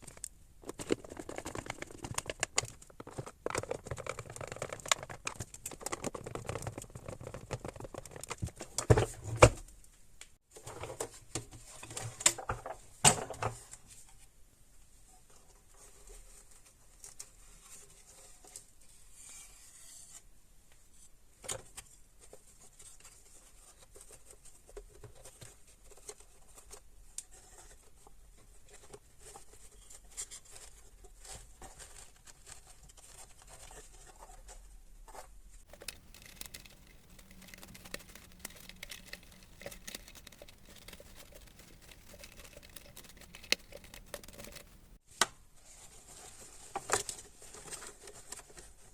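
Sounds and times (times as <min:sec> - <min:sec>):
plastic parts clicking and knocking: 0:00.0 - 0:09.2, 0:35.7 - 0:45.0
hands scratching and rubbing: 0:35.6 - 0:45.0.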